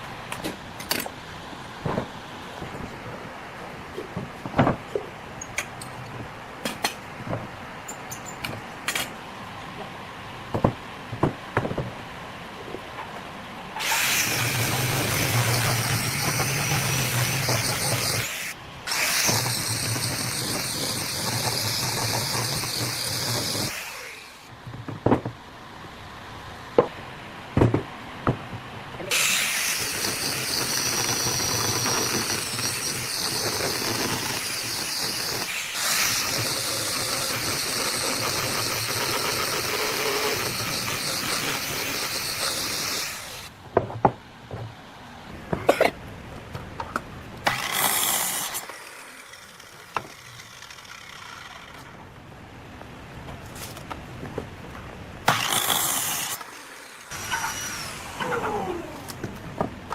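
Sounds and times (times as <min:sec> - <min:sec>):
power tool running: 0:13.8 - 0:24.5, 0:29.1 - 0:43.5, 0:47.5 - 0:51.9, 0:55.3 - 0:59.1.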